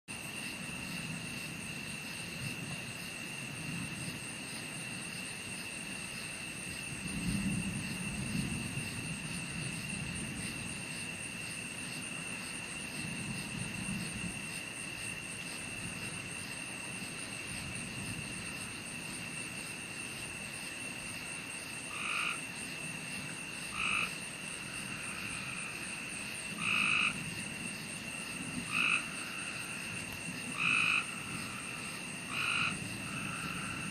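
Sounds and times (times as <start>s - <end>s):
loud frog croaks: 0.4s - 33.9s
distant thunder rumbles: 5.8s - 19.6s, 21.9s - 33.9s
chorus of frogs calling: 21.9s - 22.6s, 23.6s - 25.8s, 26.5s - 27.3s, 28.4s - 33.9s.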